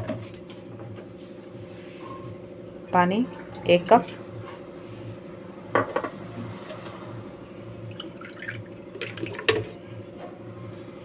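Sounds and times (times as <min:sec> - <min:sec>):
water pouring into a pan: 0:08.0 - 0:09.6.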